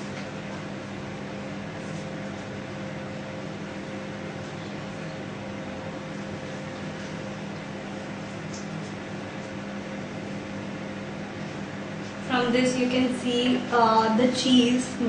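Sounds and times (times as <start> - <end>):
microwave oven humming: 0.0 - 15.0.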